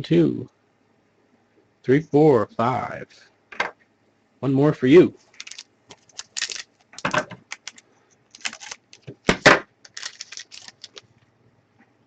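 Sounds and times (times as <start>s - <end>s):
cards rustling and tapping: 5.2s - 11.1s.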